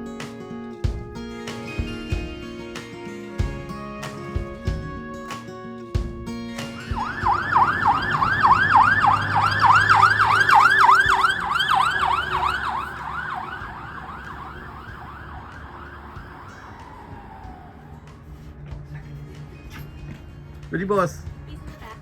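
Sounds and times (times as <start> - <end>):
siren yelping: 6.0 - 18.1.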